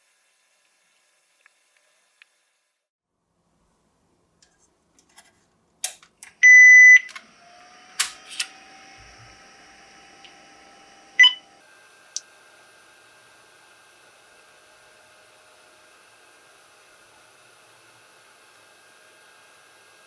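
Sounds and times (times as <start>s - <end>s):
computer fans and drives whirring: 5.8s - 20.0s
loud high computer beep: 11.2s - 11.4s.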